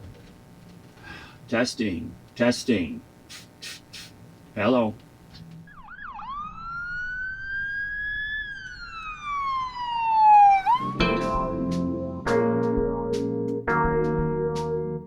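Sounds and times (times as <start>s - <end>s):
siren wailing: 5.6s - 11.5s
keyboard music: 10.6s - 15.0s.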